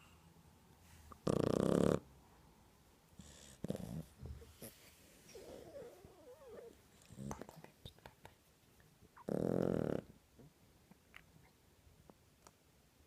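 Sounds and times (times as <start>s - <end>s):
puppy snoring: 1.1s - 2.1s, 3.2s - 7.5s, 9.2s - 10.2s.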